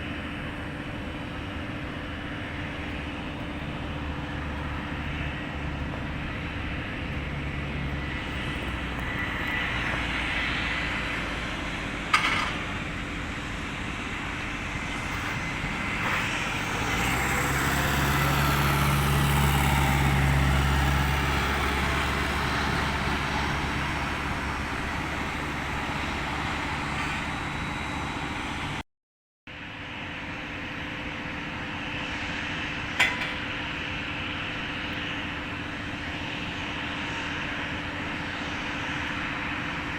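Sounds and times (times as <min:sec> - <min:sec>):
jet airliner engine noise: 0:00.0 - 0:28.8, 0:29.5 - 0:39.9.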